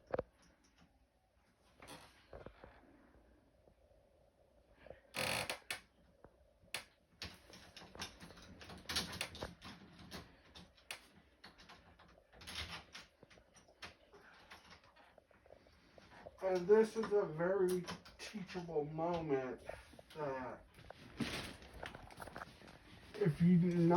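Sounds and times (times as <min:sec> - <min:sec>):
door lock clicking and rattling: 0:07.3 - 0:13.9.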